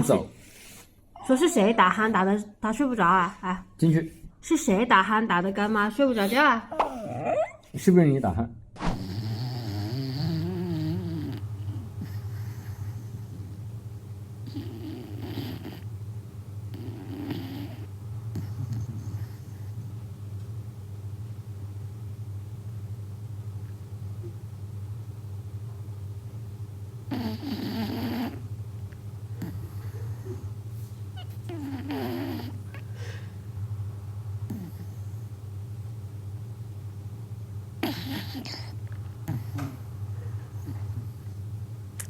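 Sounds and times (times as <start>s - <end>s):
steady low hum: 0.0s - 42.0s
dog snoring: 8.9s - 20.0s, 27.0s - 30.6s, 31.2s - 32.8s, 34.4s - 35.3s, 37.8s - 41.4s.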